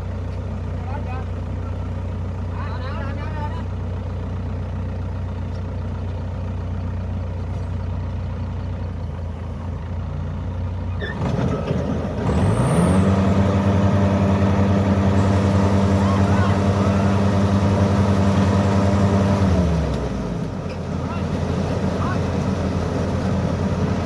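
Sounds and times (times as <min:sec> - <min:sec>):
engine revving: 0:11.1 - 0:24.0.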